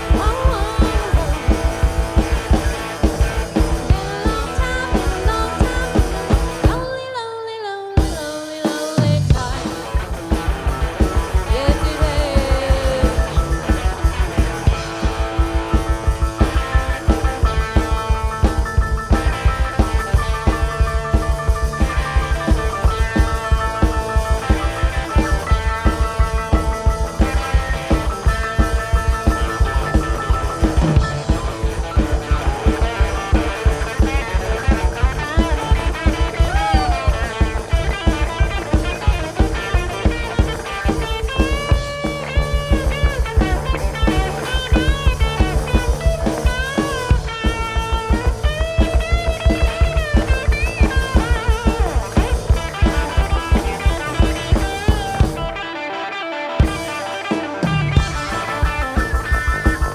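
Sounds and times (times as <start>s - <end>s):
live rock band playing: 0.0s - 59.9s
lead electric guitar bending notes: 9.2s - 59.9s.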